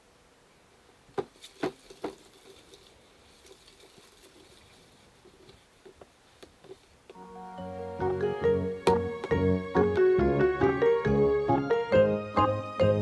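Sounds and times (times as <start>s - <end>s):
soft handling noises: 1.1s - 7.2s.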